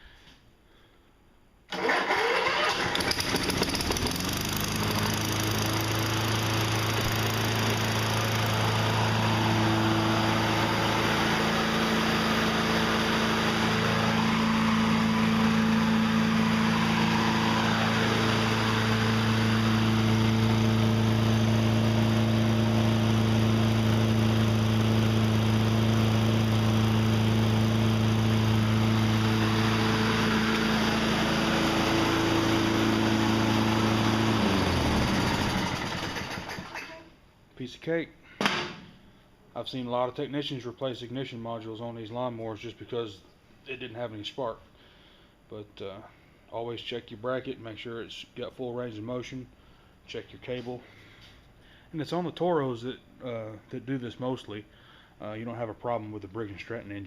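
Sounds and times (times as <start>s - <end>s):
lawn mower engine starting and running: 1.7s - 37.1s.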